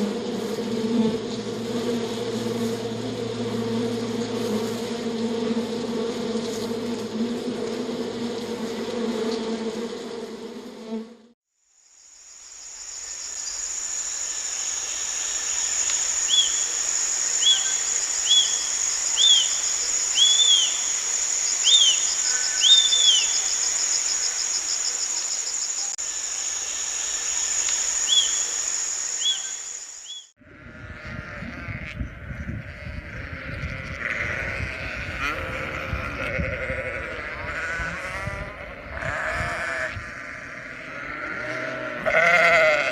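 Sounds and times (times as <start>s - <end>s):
insect wingbeat buzz: 0.0s - 42.9s
high insect shrill: 11.8s - 30.3s.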